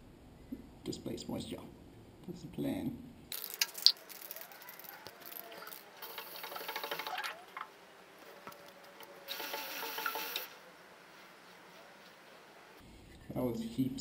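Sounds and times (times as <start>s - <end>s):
aerosol spray hissing: 9.3s - 10.5s.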